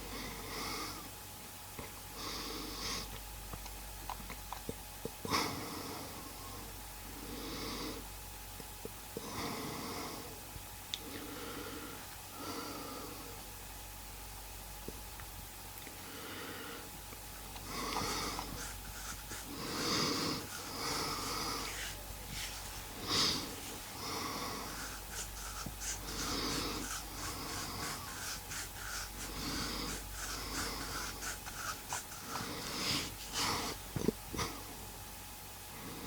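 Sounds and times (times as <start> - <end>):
man snoring: 17.7 - 22.0.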